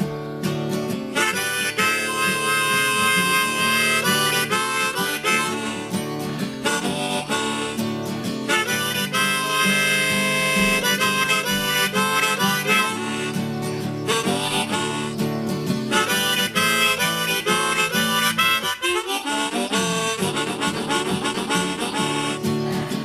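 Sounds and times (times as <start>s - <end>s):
blues harmonica: 0.0s - 23.0s
strummed acoustic guitar: 0.0s - 23.0s.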